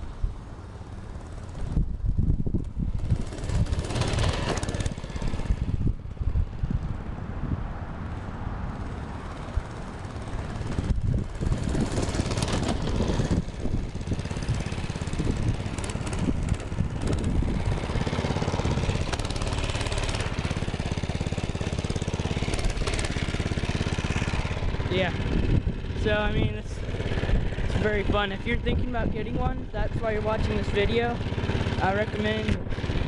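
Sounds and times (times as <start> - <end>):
mini bike engine running: 0.2 - 7.0, 8.7 - 33.0.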